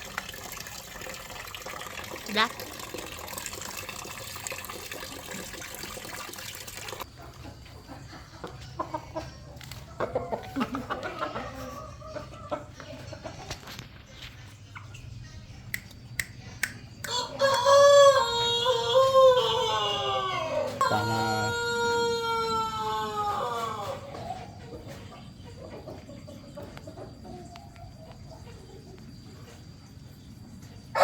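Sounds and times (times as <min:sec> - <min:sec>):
water running: 0:00.0 - 0:07.1
chicken clucking: 0:07.0 - 0:31.0
rooster crowing: 0:17.0 - 0:24.1.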